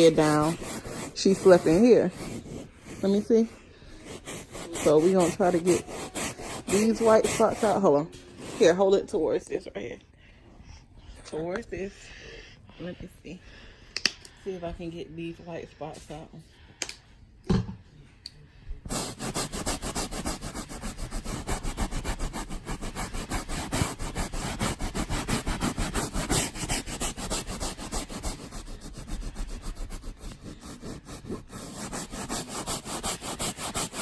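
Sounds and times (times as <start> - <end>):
brush scrubbing upholstery: 0.0 - 9.0, 18.9 - 34.0.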